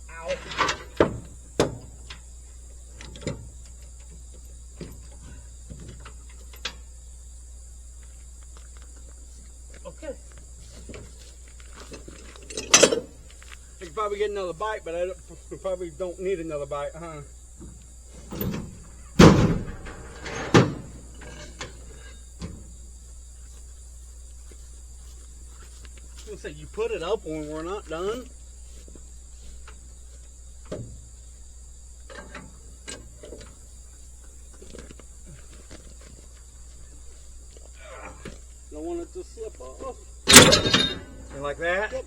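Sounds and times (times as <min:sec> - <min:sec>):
insect drone: 0:00.0 - 0:42.0
metal chains clanking: 0:11.8 - 0:13.2, 0:18.3 - 0:22.3, 0:40.2 - 0:42.0.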